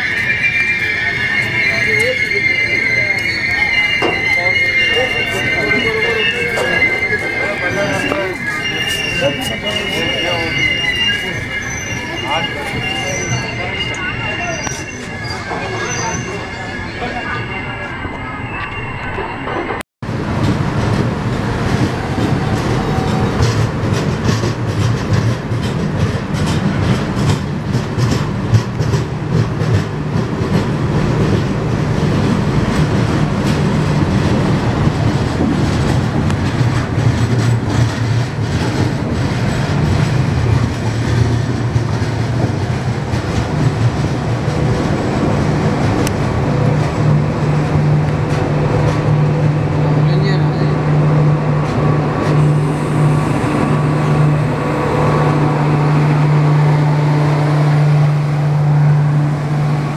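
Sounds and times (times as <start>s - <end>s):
low train rumble: 0.0s - 59.9s.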